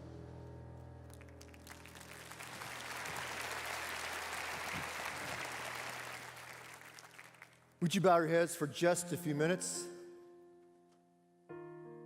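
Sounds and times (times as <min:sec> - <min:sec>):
congregation applauding: 0:01.1 - 0:08.2.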